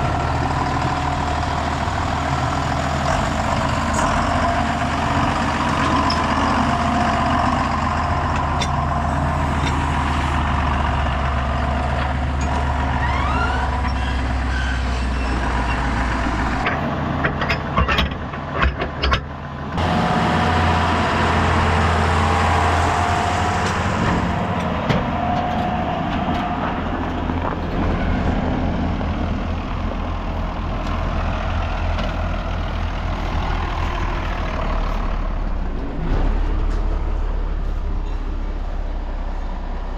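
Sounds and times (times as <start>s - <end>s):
tractor engine running: 0.0s - 39.9s
sharp knocks and clatter: 16.4s - 19.3s.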